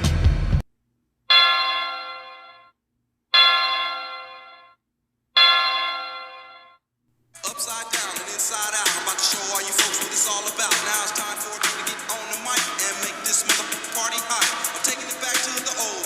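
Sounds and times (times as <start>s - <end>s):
music: 0.0s - 0.6s, 7.4s - 16.0s
bell ringing: 1.3s - 2.7s, 3.4s - 4.8s, 5.4s - 6.8s.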